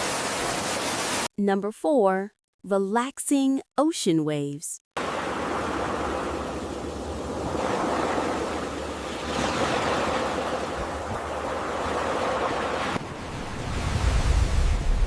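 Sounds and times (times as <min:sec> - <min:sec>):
ocean waves washing onto shore: 0:05.0 - 0:15.0.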